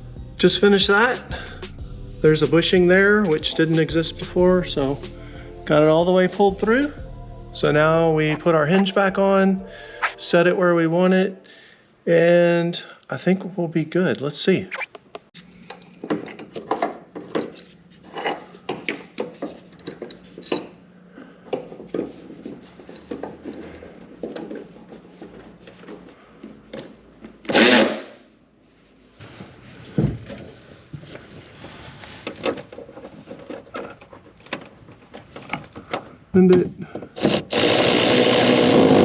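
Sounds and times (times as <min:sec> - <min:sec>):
loud noisy burst: 0:37.3 - 0:39.0.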